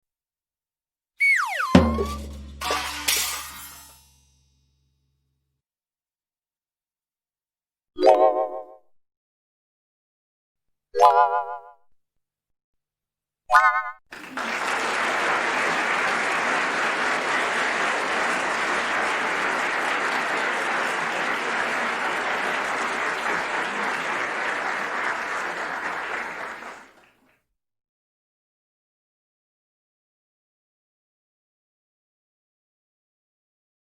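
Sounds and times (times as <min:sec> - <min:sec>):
short wobbling tone: 0:01.2 - 0:02.7
crowd clapping: 0:14.1 - 0:27.3.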